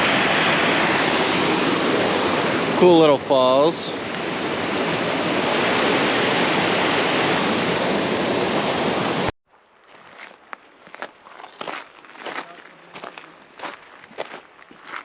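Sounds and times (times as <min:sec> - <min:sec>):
small waterfall rushing: 0:00.0 - 0:09.3
footsteps on a trail: 0:09.5 - 0:15.0.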